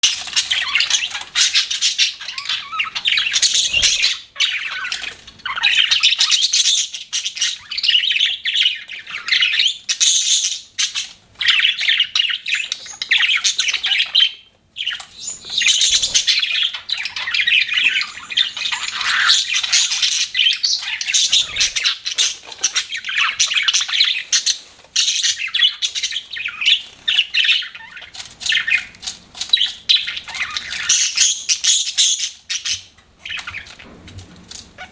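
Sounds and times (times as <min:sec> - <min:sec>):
budgerigars chirping: 0:00.0 - 0:33.9
harsh squawks: 0:15.7 - 0:24.3.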